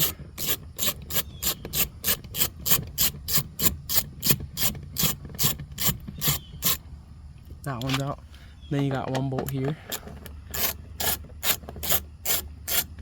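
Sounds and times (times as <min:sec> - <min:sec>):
hand ratchet rasping: 0:00.0 - 0:06.8, 0:09.7 - 0:13.0.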